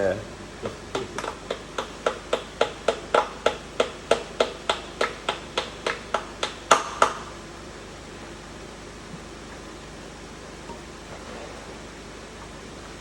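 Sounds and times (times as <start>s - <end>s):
hand tool tapping on metal: 0.6s - 7.3s.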